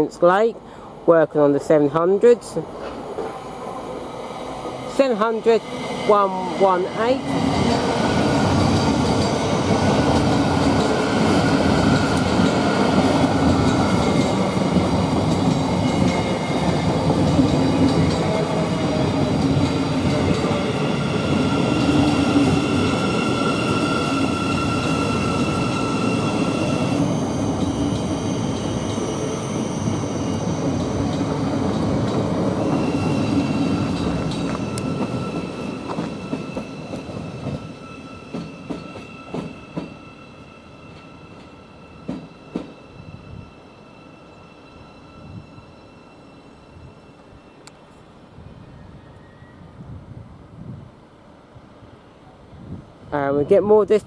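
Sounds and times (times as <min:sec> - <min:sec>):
train wheels rumbling on rails: 0:02.6 - 0:47.0.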